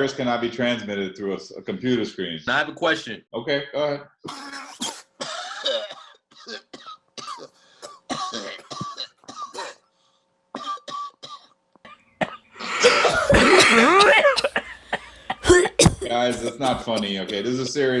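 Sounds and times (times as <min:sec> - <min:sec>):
person coughing: 0:04.3 - 0:09.8, 0:12.2 - 0:18.0
throat clearing: 0:04.3 - 0:09.8, 0:12.2 - 0:18.0.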